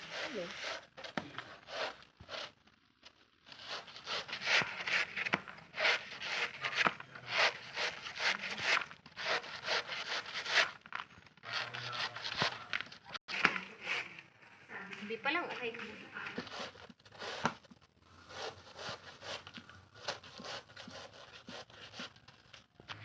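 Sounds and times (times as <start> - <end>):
banana grated on hand grater: 0.0 - 0.9, 3.6 - 10.8.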